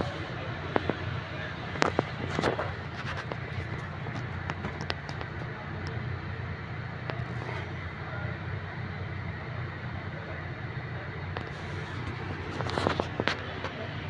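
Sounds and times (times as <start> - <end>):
steady low hum: 0.0 - 14.0
sharp clicks and knocks: 1.7 - 6.0.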